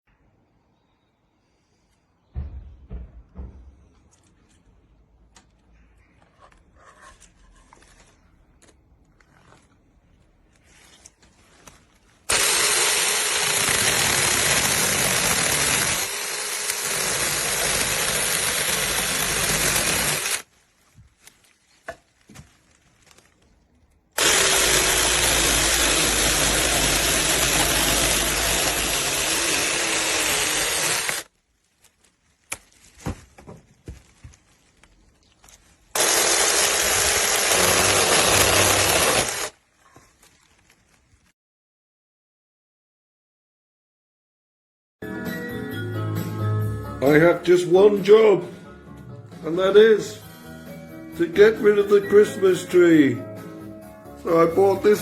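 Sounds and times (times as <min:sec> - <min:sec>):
chainsaw cutting wood: 0:12.3 - 0:20.5, 0:24.2 - 0:31.3, 0:36.0 - 0:39.6.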